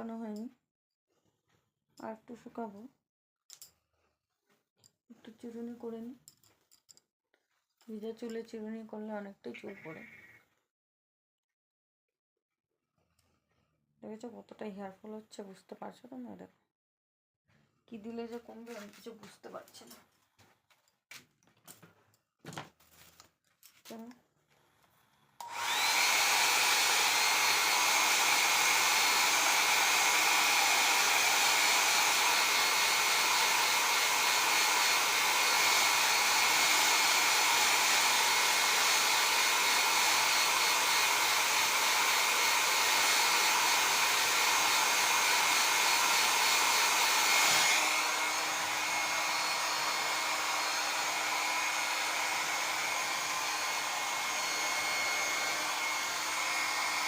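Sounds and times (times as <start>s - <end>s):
hair dryer blowing: 25.4s - 57.0s.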